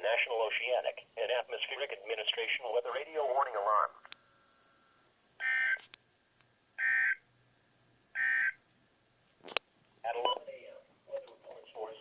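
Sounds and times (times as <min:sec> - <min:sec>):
digital data tone bursts: 0:08.2 - 0:08.6.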